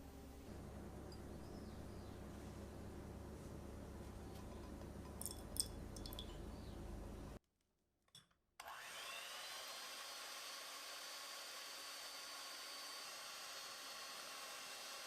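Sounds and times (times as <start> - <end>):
low hum: 0.0 - 7.4
small electric motor whine: 8.6 - 15.0.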